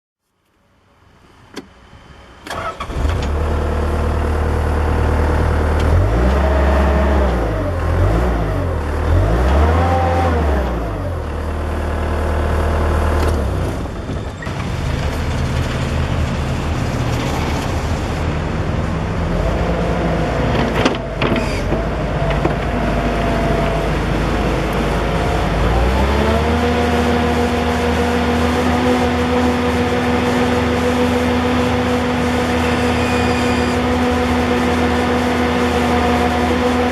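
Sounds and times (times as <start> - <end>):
diesel engine starting and revving: 2.2 - 36.9.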